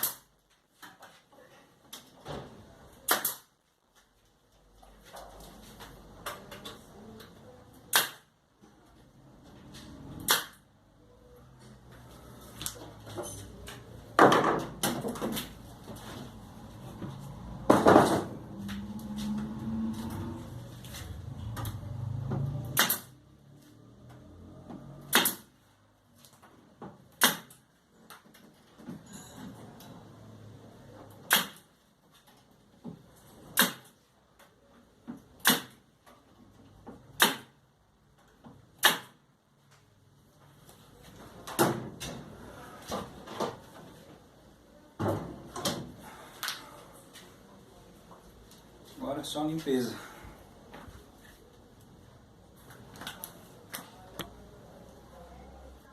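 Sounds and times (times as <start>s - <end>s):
loud wooden knocks: 14.2s - 15.5s, 17.6s - 18.5s.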